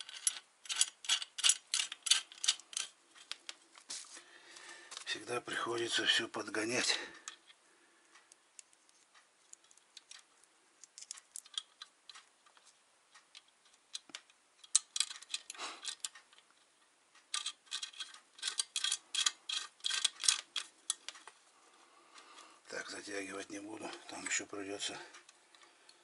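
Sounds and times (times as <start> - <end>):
metallic clicks of hand tools: 17.2 - 21.2.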